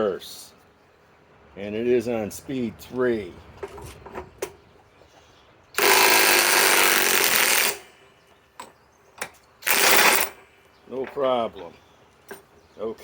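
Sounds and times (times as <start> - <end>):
cordless impact wrench hammering: 5.8 - 7.9, 8.6 - 10.4.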